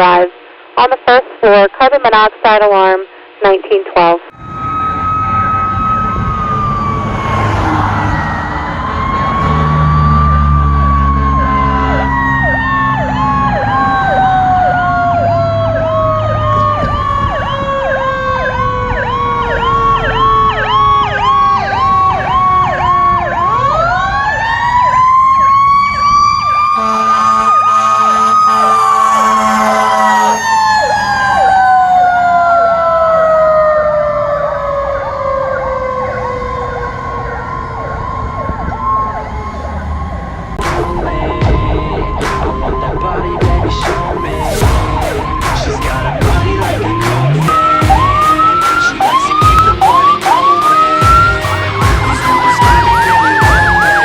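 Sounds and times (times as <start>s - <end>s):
electronic siren yelping: 4.3s - 54.0s
mechanical siren wailing: 4.3s - 54.0s
horn blast: 26.8s - 30.5s, 40.6s - 54.0s.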